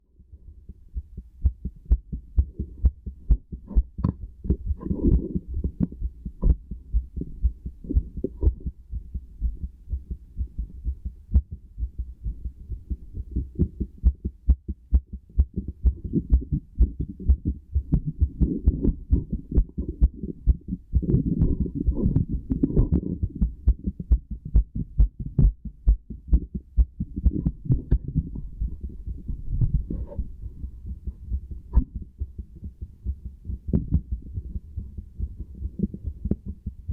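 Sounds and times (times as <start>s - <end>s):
heartbeat through stethoscope: 0.2s - 36.9s
rustling noise: 27.2s - 31.8s.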